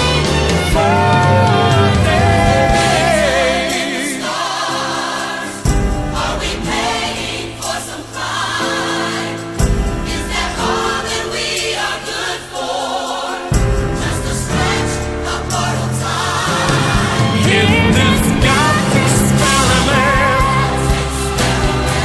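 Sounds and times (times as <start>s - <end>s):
pop ballad with singing: 0.0s - 22.0s
deep low hit: 16.5s - 20.9s.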